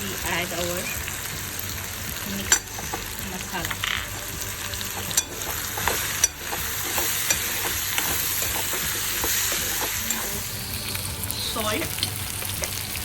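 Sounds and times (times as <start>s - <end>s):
potatoes sizzling in oil: 0.0s - 13.0s
spatula knocking pan: 5.0s - 10.3s.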